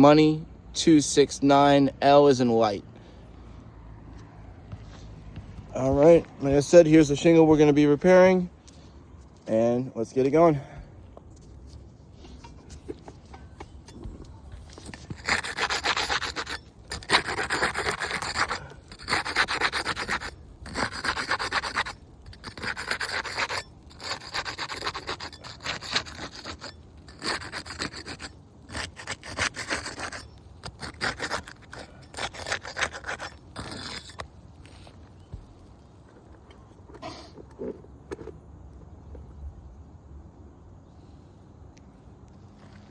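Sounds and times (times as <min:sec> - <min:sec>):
tool scraping asphalt shingles: 0:04.7 - 0:10.6, 0:11.2 - 0:38.3.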